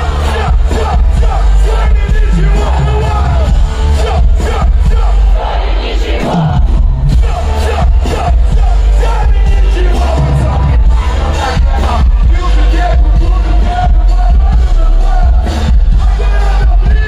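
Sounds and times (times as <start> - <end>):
faint crowd: 0.0 - 17.0
live hip-hop music over pa: 0.0 - 17.0.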